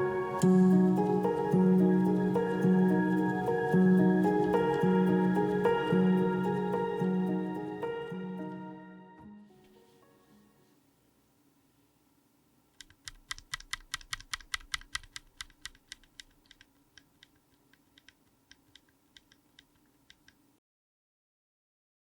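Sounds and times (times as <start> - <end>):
mechanical keyboard typing: 12.8 - 20.4.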